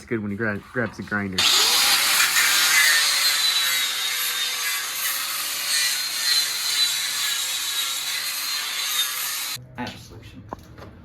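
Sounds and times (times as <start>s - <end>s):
angle grinder grinding: 1.4s - 9.6s.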